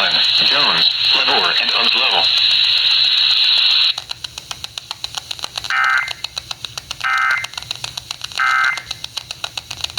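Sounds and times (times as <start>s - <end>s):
rapid even clicking: 3.9s - 9.9s.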